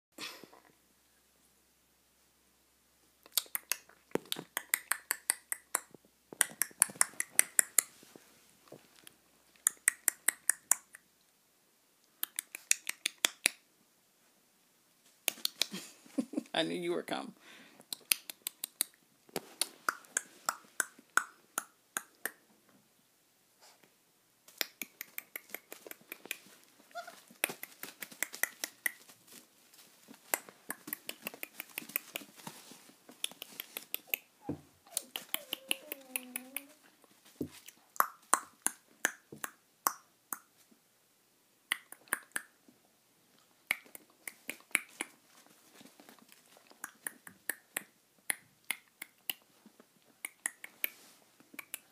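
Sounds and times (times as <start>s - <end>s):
puppies clicking and smacking: 3.3s - 8.0s, 24.5s - 29.2s, 30.2s - 34.3s, 34.9s - 36.8s, 43.7s - 47.8s
puppy squeaks: 26.9s - 27.2s, 34.4s - 36.8s
puppy whining: 26.9s - 27.3s, 34.4s - 36.9s.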